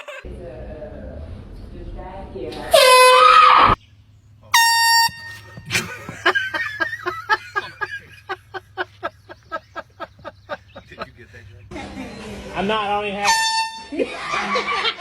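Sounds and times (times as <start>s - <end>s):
air horn blasts: 2.7s - 3.8s, 4.5s - 5.9s, 13.2s - 14.1s.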